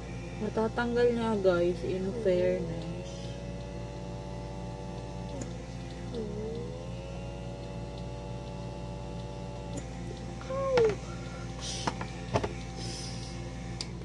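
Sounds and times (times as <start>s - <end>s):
small vacuum motor whining: 0.0s - 14.0s.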